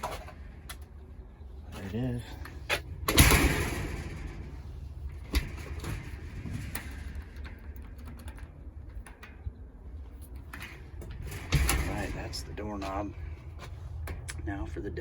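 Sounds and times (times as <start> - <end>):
metal door banging: 2.8 - 8.0, 10.7 - 13.2.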